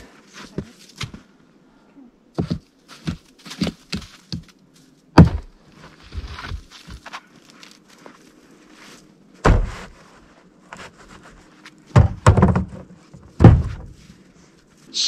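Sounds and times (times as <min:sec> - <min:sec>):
log thudding on truck bed: 0:05.2 - 0:05.6, 0:09.4 - 0:09.9, 0:11.9 - 0:14.0
log handling knocks: 0:05.2 - 0:07.1, 0:11.9 - 0:14.0
log scraping: 0:05.2 - 0:14.9.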